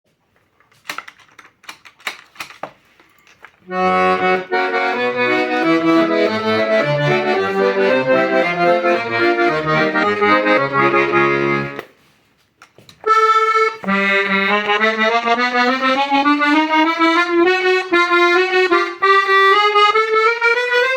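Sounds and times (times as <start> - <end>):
sharp clicks: 0.8 - 3.6
accordion playing a tune: 3.6 - 12.0, 13.0 - 20.9.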